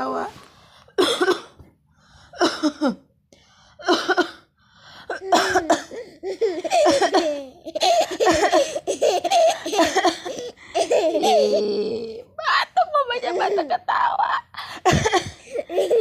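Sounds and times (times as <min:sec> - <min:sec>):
woman coughing: 0:01.0 - 0:01.6, 0:02.4 - 0:03.0, 0:03.8 - 0:04.5, 0:05.1 - 0:11.8, 0:14.7 - 0:16.0
baby giggling: 0:06.2 - 0:12.1, 0:14.9 - 0:16.0.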